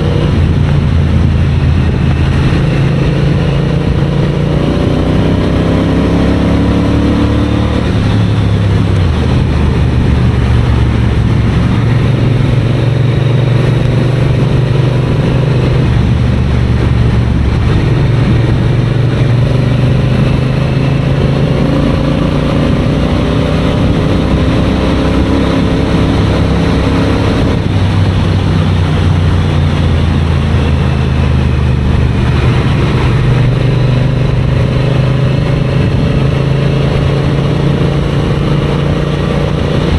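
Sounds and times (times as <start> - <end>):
motorcycle engine revving: 0.0 - 39.9.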